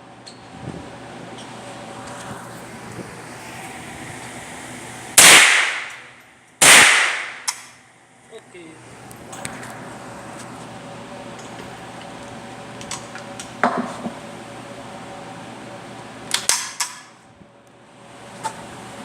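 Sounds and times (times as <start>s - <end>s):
ventilation hum: 0.0s - 19.0s
gunshots: 5.2s - 6.0s, 6.6s - 7.6s.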